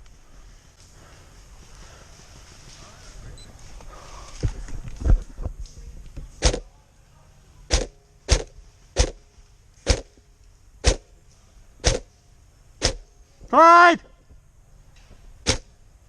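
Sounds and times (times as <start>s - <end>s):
airsoft gun shots: 6.4s - 6.7s, 7.7s - 9.2s, 9.8s - 10.1s, 10.8s - 11.1s, 11.8s - 12.1s, 12.8s - 13.1s, 15.4s - 15.8s.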